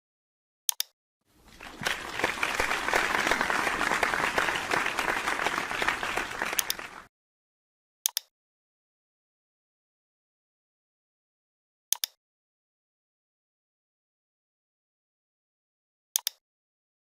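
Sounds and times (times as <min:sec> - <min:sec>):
crowd applause: 0:01.4 - 0:07.1.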